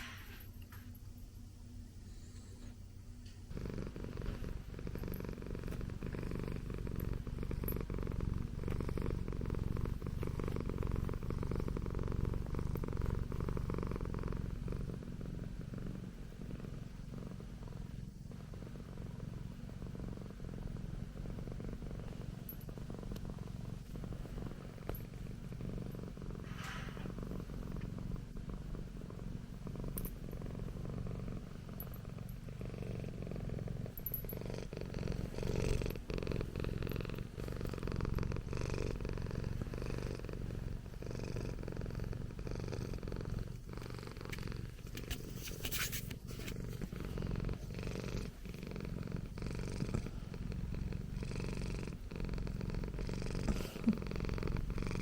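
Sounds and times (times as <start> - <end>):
cat purring: 0.0 - 55.0
brief rustle: 44.9 - 46.8.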